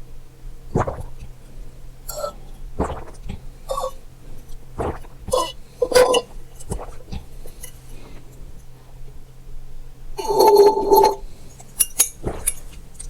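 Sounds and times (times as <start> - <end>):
person gulping water: 0.7 - 1.4, 2.0 - 7.6, 10.2 - 11.2, 12.2 - 12.8.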